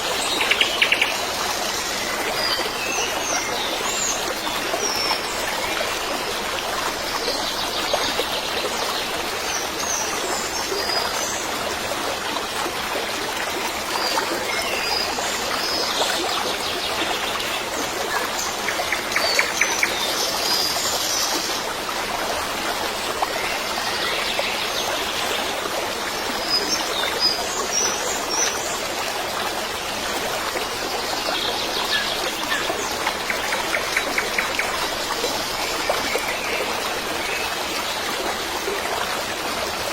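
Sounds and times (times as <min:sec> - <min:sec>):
stream flowing: 0:00.0 - 0:39.9.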